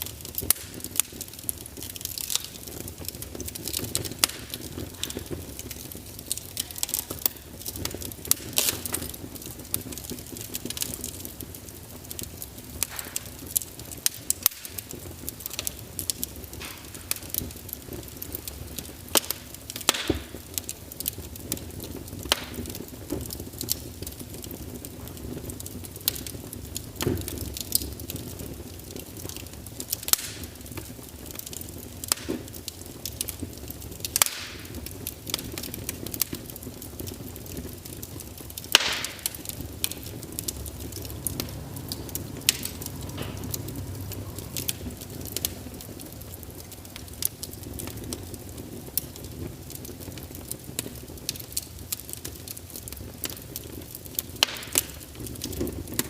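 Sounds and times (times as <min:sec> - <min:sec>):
wood fire crackling and popping: 0:00.0 - 0:56.0
low steady rumble: 0:39.4 - 0:49.6.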